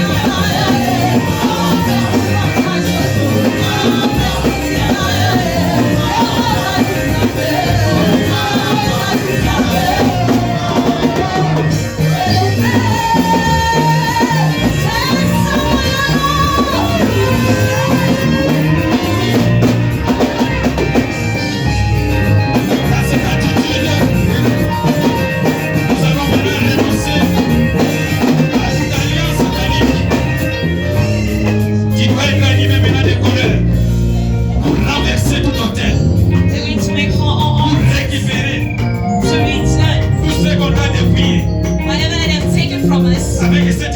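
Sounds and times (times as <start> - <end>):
person singing: 0.0 - 21.7, 22.6 - 43.9
drum and bass beat: 0.0 - 43.9.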